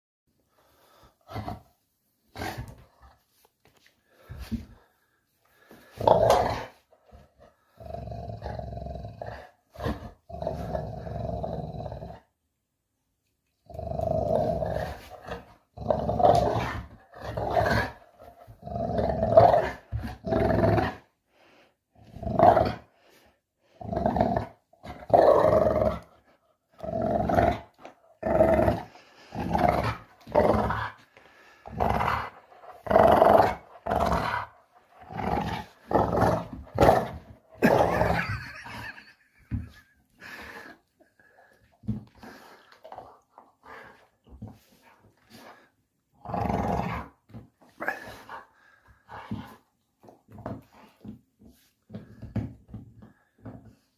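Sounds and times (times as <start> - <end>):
dog growling: 26.7 - 44.0.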